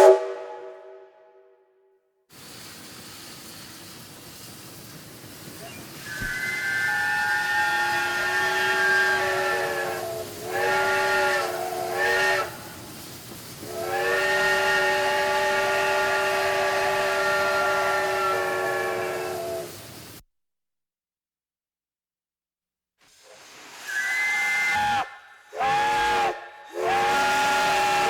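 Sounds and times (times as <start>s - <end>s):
steam locomotive chime whistle: 0.0s - 1.5s, 5.6s - 12.9s, 13.6s - 19.8s, 23.8s - 28.0s.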